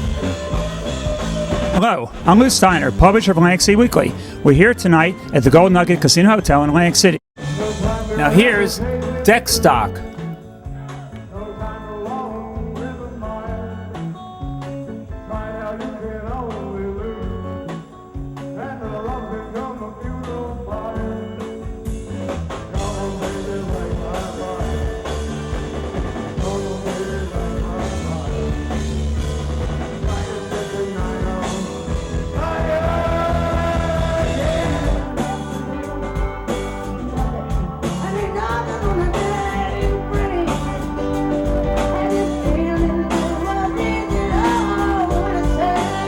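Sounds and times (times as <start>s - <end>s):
person singing: 0.0s - 13.9s, 22.8s - 25.4s, 26.4s - 29.1s, 30.0s - 46.0s
rock band playing: 0.0s - 46.0s.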